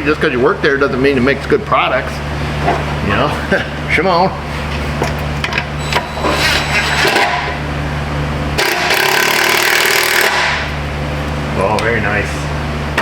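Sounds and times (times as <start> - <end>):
impact wrench running: 8.6 - 10.8.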